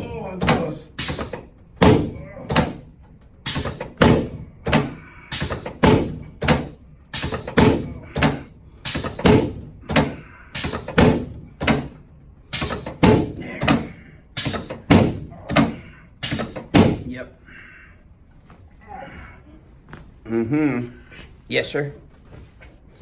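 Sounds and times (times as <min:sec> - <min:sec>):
heavy thumps on padded table: 0:01.8 - 0:02.8, 0:09.2 - 0:10.2, 0:14.8 - 0:15.8.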